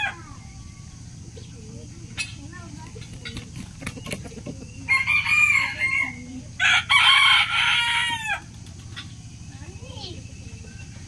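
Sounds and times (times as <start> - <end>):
rooster crowing: 4.8 - 8.5.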